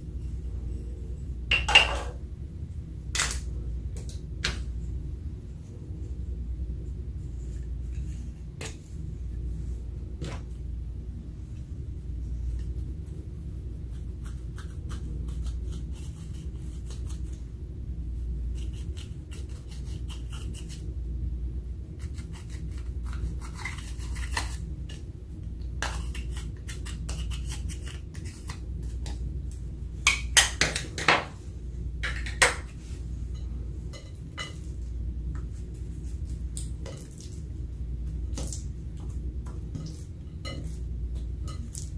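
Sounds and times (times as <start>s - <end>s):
steady low hum: 0.0s - 41.9s
utensil scraping and clicking in container: 25.8s - 29.2s.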